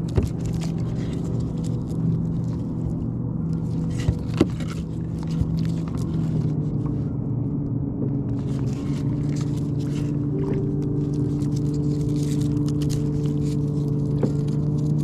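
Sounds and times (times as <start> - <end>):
engine droning: 0.0 - 15.0.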